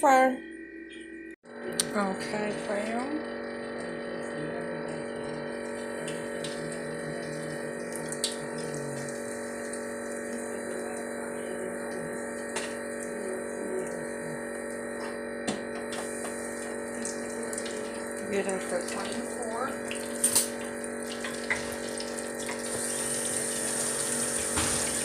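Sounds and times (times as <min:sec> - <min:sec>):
oil bubbling and sizzling: 0:05.6 - 0:13.3, 0:14.9 - 0:25.0.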